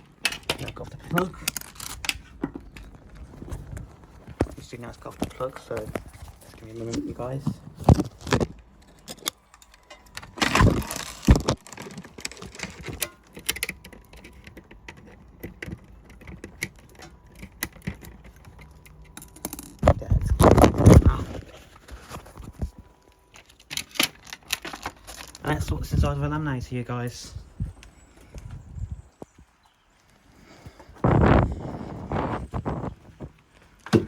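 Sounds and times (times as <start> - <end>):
plastic parts clattering: 0.1 - 3.8, 7.0 - 22.6, 23.3 - 25.8.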